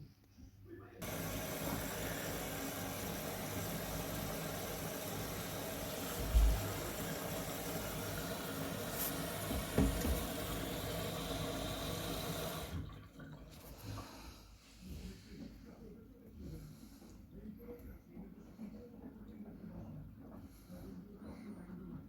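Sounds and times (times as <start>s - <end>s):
water rushing in washing machine: 1.0s - 14.3s.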